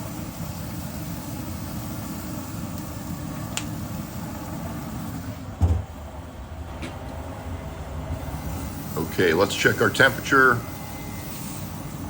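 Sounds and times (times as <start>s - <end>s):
dull thump: 5.6s - 6.0s.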